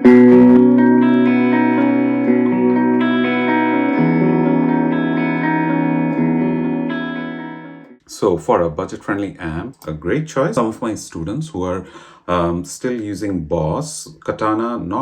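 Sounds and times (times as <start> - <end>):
electric guitar chords ringing: 0.0 - 8.0.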